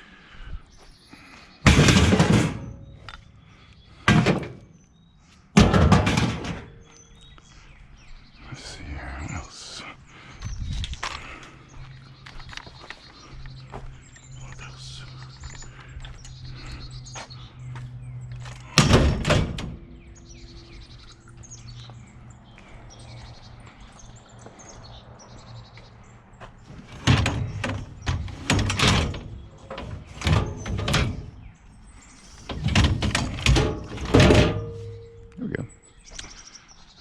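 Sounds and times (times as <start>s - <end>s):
scrap metal clanking: 1.6s - 3.3s, 4.0s - 4.7s, 5.6s - 6.9s, 18.4s - 20.8s, 26.7s - 31.5s, 32.2s - 35.4s.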